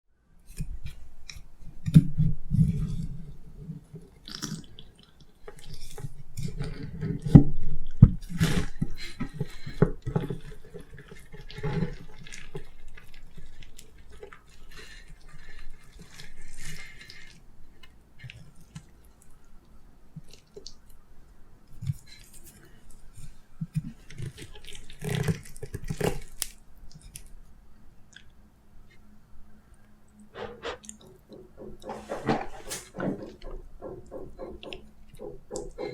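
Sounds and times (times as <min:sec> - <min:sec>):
wet sticky chewing: 0:04.0 - 0:21.0, 0:21.6 - 0:28.4
utensil clicks and taps: 0:30.9 - 0:35.9.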